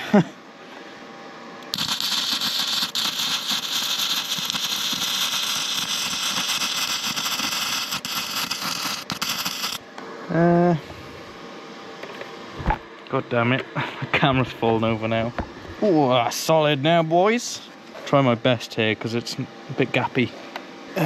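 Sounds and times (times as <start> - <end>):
arc welder crackling: 1.6 - 9.8.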